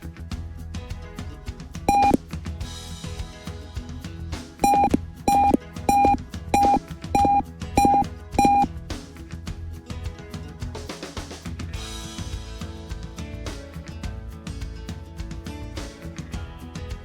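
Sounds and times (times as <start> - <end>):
background music: 0.0 - 17.0
piezo buzzer beeping: 1.9 - 2.2, 4.6 - 8.7.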